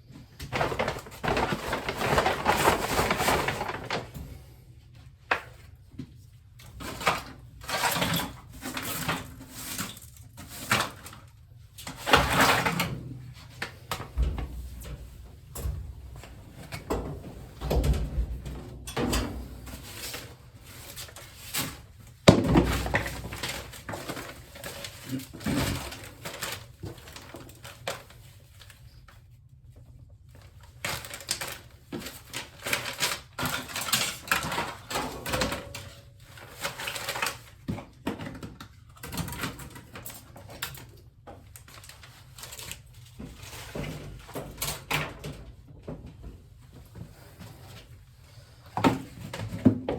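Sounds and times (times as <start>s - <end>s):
knocks and scrapes of handling equipment: 0.5s - 4.1s, 11.8s - 27.0s.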